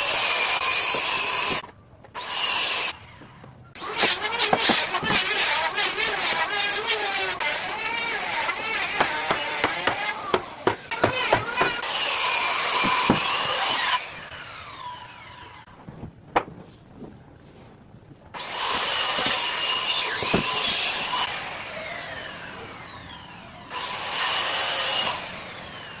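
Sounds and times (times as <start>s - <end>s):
power tool cutting wood: 0.0s - 1.6s, 2.2s - 3.2s, 3.8s - 15.7s, 18.4s - 26.0s
sharp knocks: 12.8s - 13.6s.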